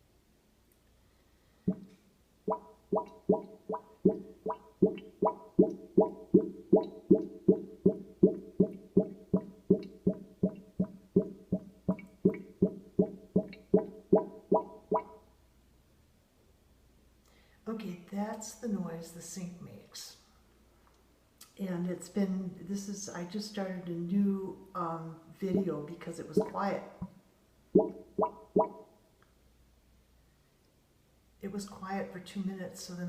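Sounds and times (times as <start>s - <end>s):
sink drain gurgling: 2.5s - 15.1s.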